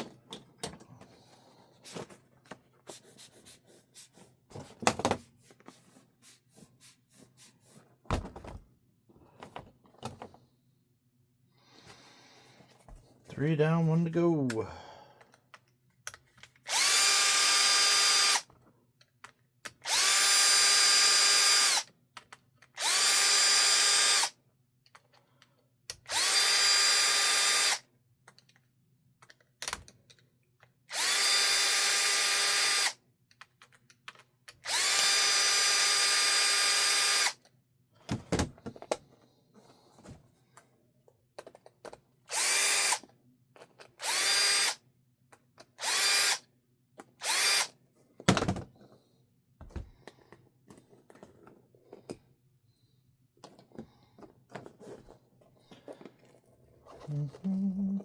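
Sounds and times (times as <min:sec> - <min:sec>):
power drill whining: 0:16.6 - 0:18.5, 0:19.8 - 0:21.9, 0:22.8 - 0:24.4, 0:26.0 - 0:27.8, 0:30.9 - 0:33.0, 0:34.6 - 0:37.4, 0:42.3 - 0:43.1, 0:44.0 - 0:44.8, 0:45.8 - 0:46.4, 0:47.2 - 0:47.7.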